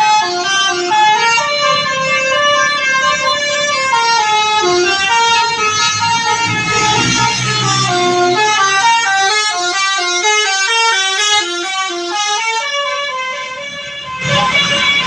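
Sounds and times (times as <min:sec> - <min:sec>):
bus musical horn melody: 0:00.0 - 0:15.0
low rumble of bus: 0:00.0 - 0:15.0
rush of noise: 0:01.4 - 0:09.3.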